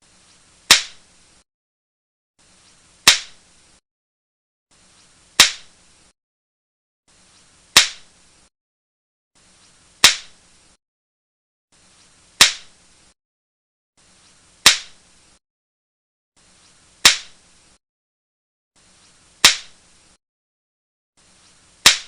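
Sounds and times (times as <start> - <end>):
faint hiss: 0.0 - 1.4, 7.1 - 8.5, 9.4 - 10.8, 11.8 - 13.2, 14.0 - 15.4, 16.4 - 17.8, 18.8 - 20.2, 21.2 - 22.0
sharp crack: 0.7 - 1.0, 3.1 - 3.4, 5.4 - 5.7, 7.8 - 8.1, 10.0 - 10.4, 12.4 - 12.7, 14.6 - 15.0, 17.0 - 17.4, 19.4 - 19.8.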